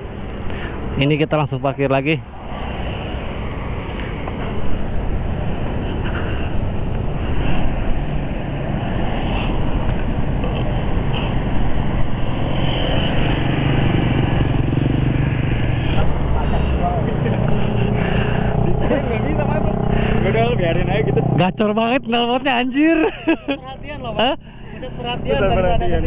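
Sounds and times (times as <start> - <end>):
motorcycle engine running: 12.0 - 21.6.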